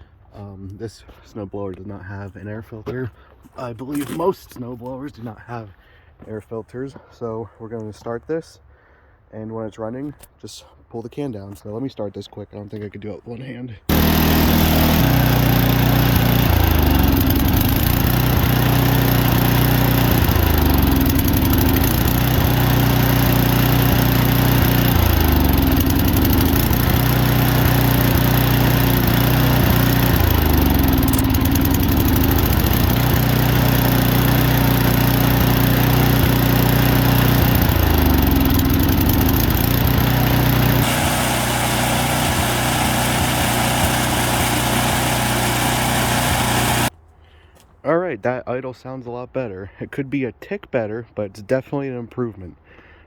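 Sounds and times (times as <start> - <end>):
spray bursts: 13.9 - 34.0, 38.5 - 46.9
snowblower engine bogging and recovering: 13.9 - 46.9.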